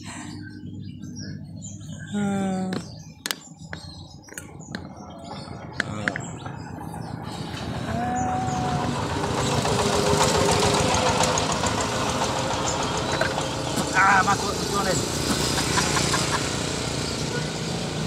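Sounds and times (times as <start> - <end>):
vehicle engine running: 0.0 - 18.0.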